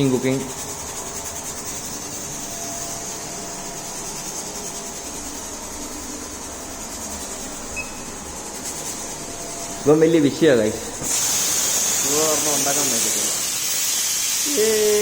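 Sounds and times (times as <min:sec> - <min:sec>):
even hiss: 0:08.6 - 0:15.0.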